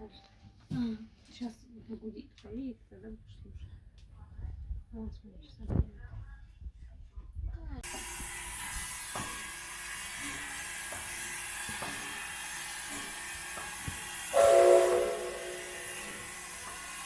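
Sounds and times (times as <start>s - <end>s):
steam locomotive hissing: 7.8s - 17.0s
steam whistle blast: 14.2s - 17.0s.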